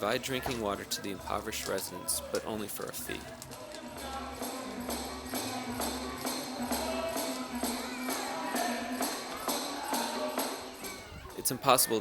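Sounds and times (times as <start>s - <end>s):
music with steady beat: 2.5s - 10.9s.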